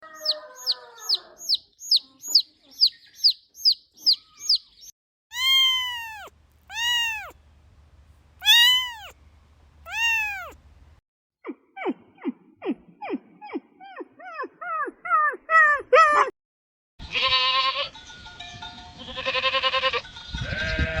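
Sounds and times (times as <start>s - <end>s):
small bird chirping: 0.1s - 7.6s, 8.4s - 10.8s
cat meowing: 5.3s - 7.4s, 8.4s - 9.2s, 9.9s - 10.6s
short falling animal calls: 5.4s - 7.4s, 8.4s - 9.2s, 9.9s - 10.6s.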